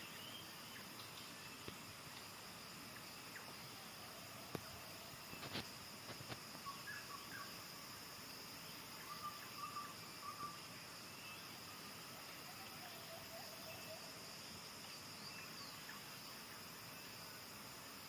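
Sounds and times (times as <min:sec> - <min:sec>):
faint bird chirps: 0:00.0 - 0:01.9, 0:06.5 - 0:07.6, 0:08.6 - 0:14.2
insects droning: 0:00.0 - 0:18.0.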